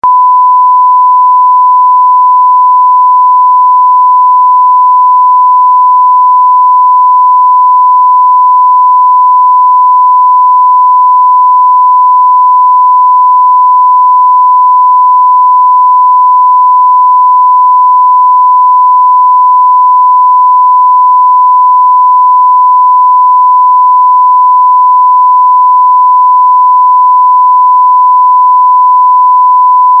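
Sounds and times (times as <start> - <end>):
censorship bleep tone: 0.0 - 30.0.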